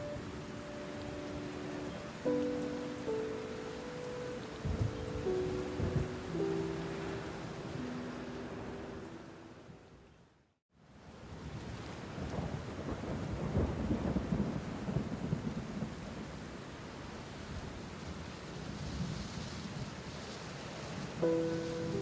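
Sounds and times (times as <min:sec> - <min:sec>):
steady rain: 0:00.0 - 0:22.0
rolling thunder rumble: 0:04.6 - 0:06.7, 0:12.1 - 0:16.5.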